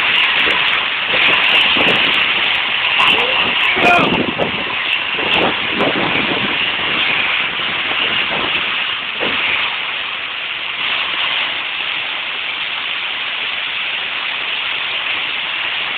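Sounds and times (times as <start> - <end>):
hail and rain pouring down: 0.0 - 15.9.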